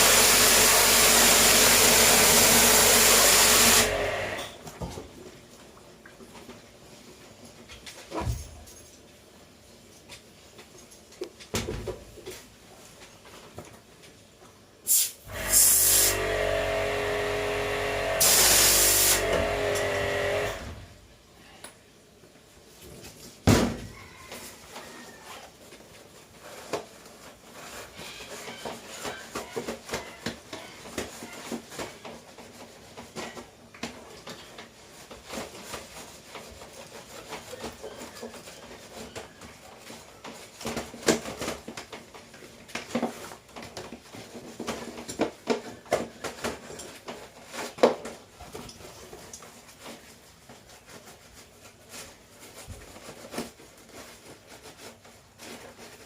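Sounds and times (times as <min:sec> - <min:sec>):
small motor hissing and winding down: 0:00.0 - 0:04.4, 0:14.9 - 0:20.8.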